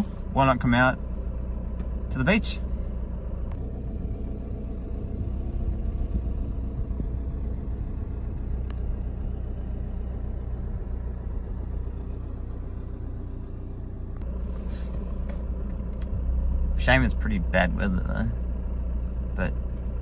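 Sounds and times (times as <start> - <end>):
vehicle engine running: 0.0 - 20.0
wind rumble on microphone: 5.1 - 8.8.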